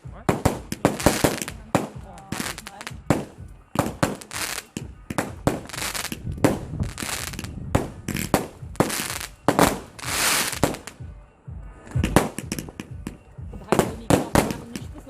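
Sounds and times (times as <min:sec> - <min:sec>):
fireworks bangs: 0:00.0 - 0:11.1, 0:11.9 - 0:15.0
fireworks hissing crackle: 0:00.4 - 0:03.2, 0:03.8 - 0:07.5, 0:08.1 - 0:10.9.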